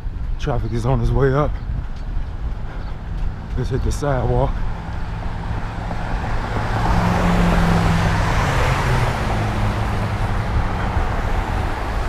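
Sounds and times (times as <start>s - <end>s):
low traffic rumble: 0.0s - 12.0s
vehicle passing: 1.6s - 12.0s.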